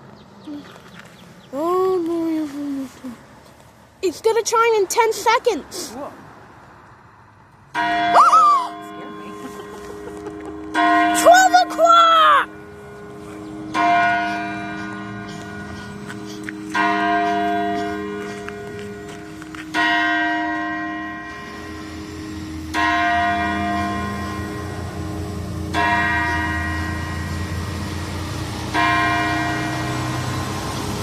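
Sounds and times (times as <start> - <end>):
church bell striking: 7.8 - 31.0.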